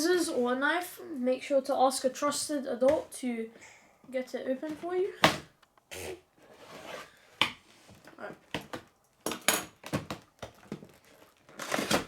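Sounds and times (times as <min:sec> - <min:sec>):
packaging rustle: 0:10.2 - 0:12.0.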